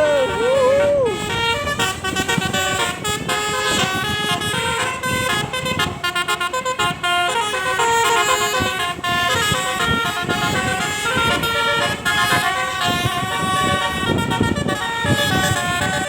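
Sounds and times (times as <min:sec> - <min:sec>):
bus horns playing melodic tunes: 0:00.0 - 0:16.0.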